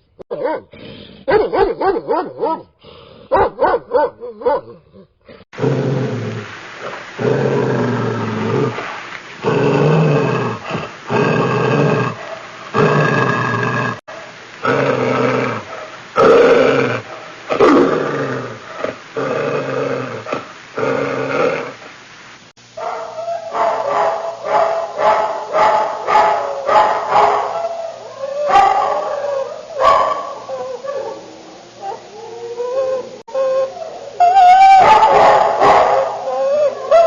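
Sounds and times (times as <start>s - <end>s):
dog growling: 4.2s - 14.0s, 14.6s - 21.9s
dog whining: 30.4s - 37.0s
dog yipping: 34.3s - 36.1s.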